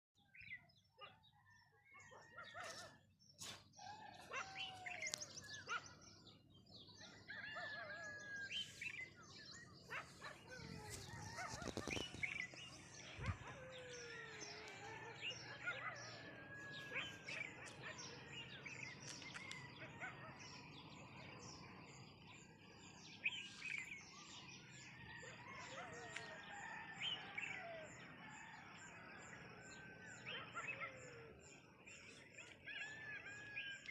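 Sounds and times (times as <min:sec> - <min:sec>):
birds chirping and calling: 0:00.3 - 0:33.9.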